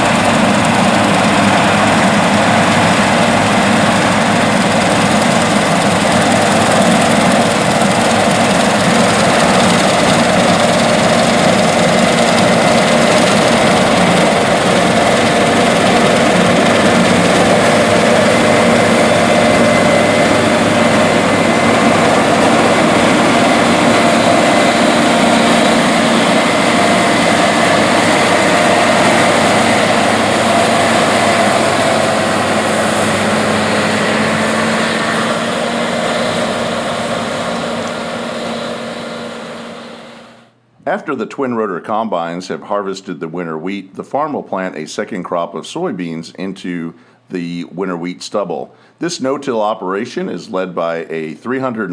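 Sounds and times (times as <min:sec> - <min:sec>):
thin machinery whine: 0:00.0 - 0:40.5
combine harvester drone: 0:00.0 - 0:40.6.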